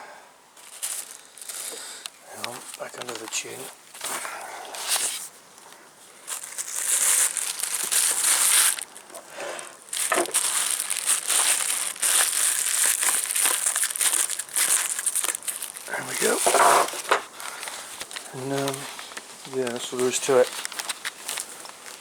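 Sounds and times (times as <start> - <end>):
microphone rubbing on clothing: 16.2 - 17.1.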